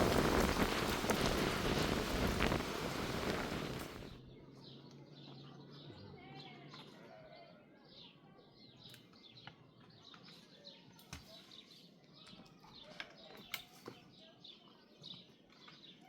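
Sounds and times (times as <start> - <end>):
heavy rain: 0.0 - 4.2
wind noise: 0.0 - 4.2
small birds chirping: 0.0 - 16.0.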